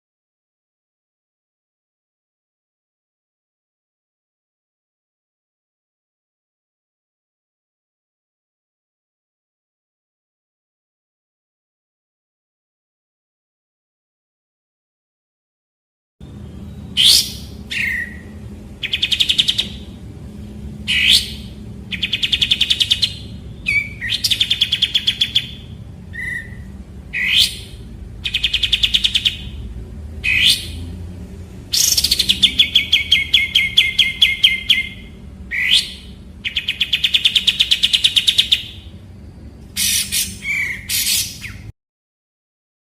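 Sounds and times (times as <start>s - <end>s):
low background hum: 16.2s - 41.7s
bird whistles and trills: 16.3s - 20.0s, 20.8s - 29.6s, 30.2s - 30.9s, 31.7s - 38.9s, 39.7s - 41.7s.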